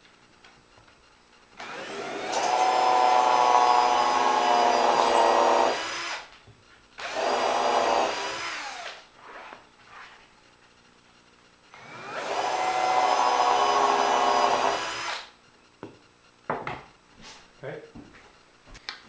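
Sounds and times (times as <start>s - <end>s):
electric drill drilling: 1.6s - 6.3s, 7.0s - 9.0s, 11.7s - 15.3s.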